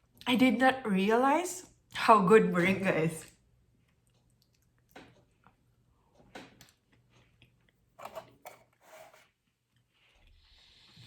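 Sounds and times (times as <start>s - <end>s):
faint chewing: 3.7s - 10.3s.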